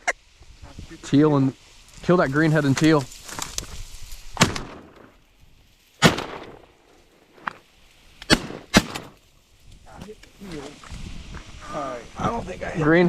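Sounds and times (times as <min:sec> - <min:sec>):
shotgun blasts with echo: 0:04.4 - 0:04.9, 0:06.0 - 0:06.6, 0:08.3 - 0:09.1.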